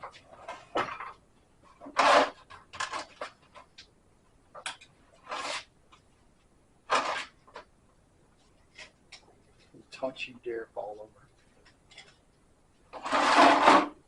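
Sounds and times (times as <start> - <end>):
scraping rubbing handling noises: 0.1 - 3.7, 5.1 - 5.7, 6.9 - 7.7, 12.9 - 14.0.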